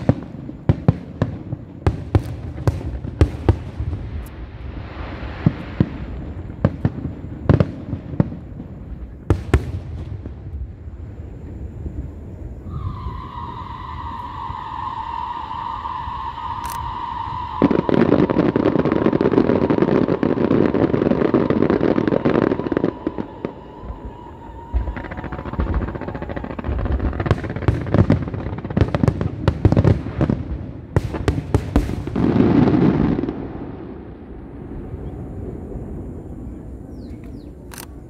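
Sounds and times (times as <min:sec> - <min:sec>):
fireworks bangs: 0:00.0 - 0:38.0
fireworks crackling: 0:00.0 - 0:38.0
high whistle-like tone: 0:12.6 - 0:20.9, 0:21.9 - 0:26.6.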